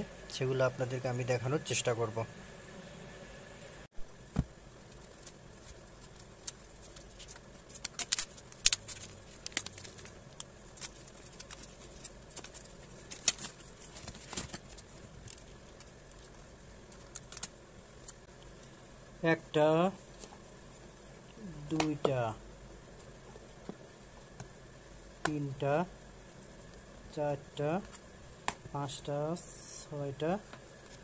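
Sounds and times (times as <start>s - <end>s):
wrapping crinkling and rustling: 4.8s - 18.3s
sharp snaps of wrapping: 6.0s - 16.3s.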